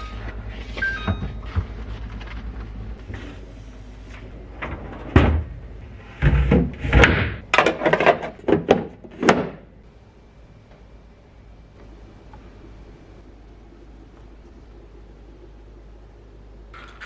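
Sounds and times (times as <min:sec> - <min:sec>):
fridge drawers knocking and clunking: 0:04.4 - 0:09.7.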